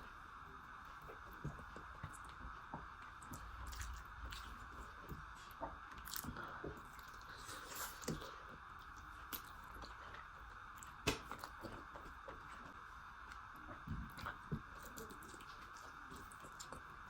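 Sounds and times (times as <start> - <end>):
person chewing and biting food: 3.2 - 5.2, 5.9 - 9.9.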